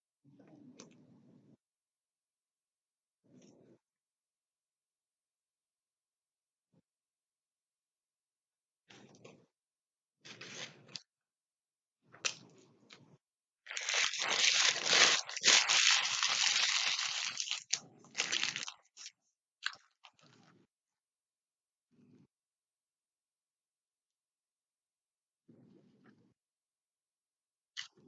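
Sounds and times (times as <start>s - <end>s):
food crunching and crinkling: 13.7s - 20.5s.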